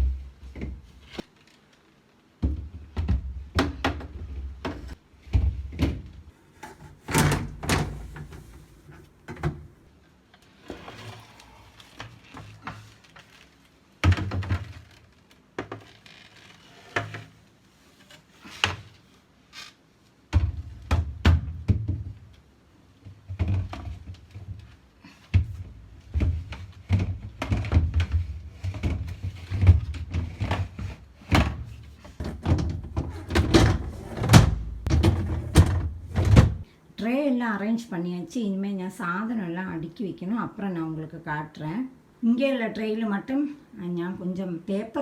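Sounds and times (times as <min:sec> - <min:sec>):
glass fridge shelves clunking: 0:31.5 - 0:36.6.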